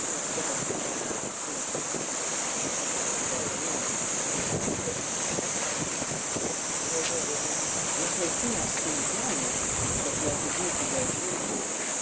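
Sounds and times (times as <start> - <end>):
cicadas droning: 0.0 - 12.0.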